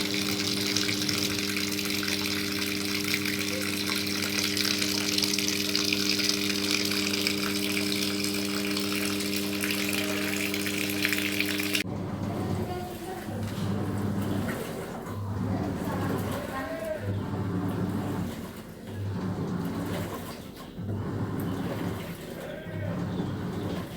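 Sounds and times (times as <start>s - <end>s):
low electrical hum: 0.0s - 18.6s
water rushing into washing machine: 0.0s - 23.9s.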